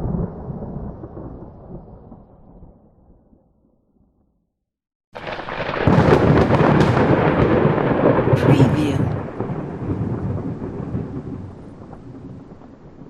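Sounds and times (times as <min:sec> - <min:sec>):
thunder clap and rumble: 0:05.2 - 0:13.0.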